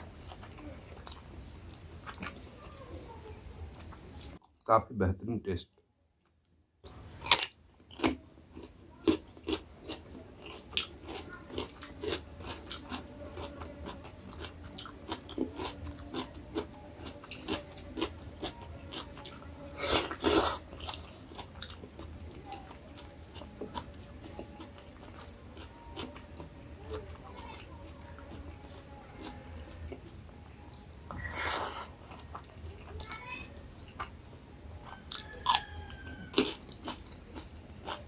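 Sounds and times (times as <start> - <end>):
chewing mouth sounds: 35.0 - 38.0.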